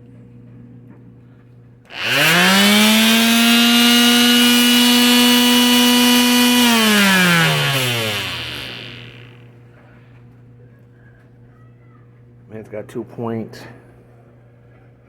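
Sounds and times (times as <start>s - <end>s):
palm sander buzzing whine: 1.9s - 9.3s.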